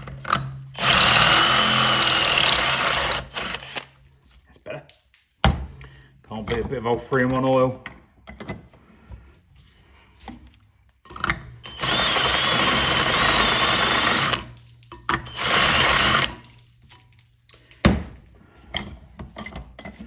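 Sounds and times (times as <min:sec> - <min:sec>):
cordless drill boring through metal: 0:00.0 - 0:04.0, 0:11.6 - 0:16.5.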